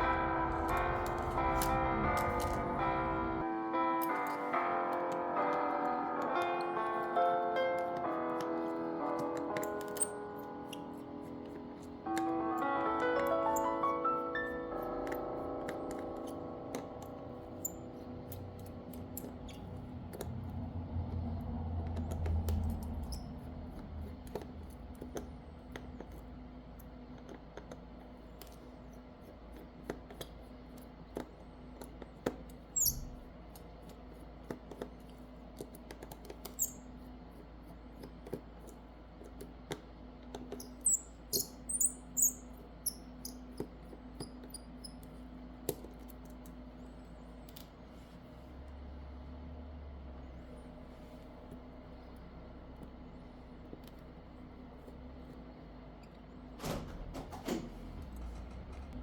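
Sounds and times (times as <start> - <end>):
hand tools clicking and tapping: 0.0 - 3.1, 4.0 - 20.5
background music: 0.0 - 21.6
short high squeaks: 32.8 - 33.2, 40.6 - 43.4.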